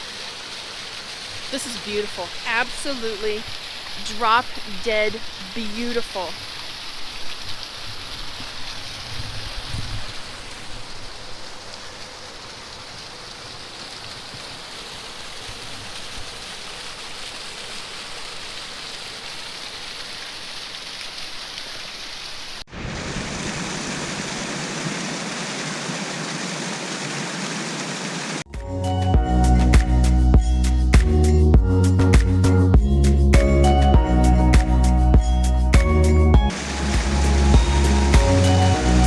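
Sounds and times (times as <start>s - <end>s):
creek water rushing: 0.0s - 28.5s, 35.8s - 39.0s.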